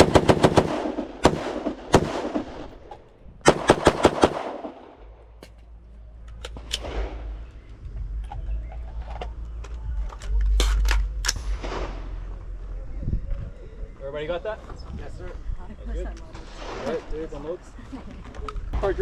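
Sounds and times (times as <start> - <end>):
pistol shots: 0.0 - 2.7, 3.4 - 5.0
rifle shots: 0.0 - 2.8, 3.4 - 5.1, 10.6 - 12.3.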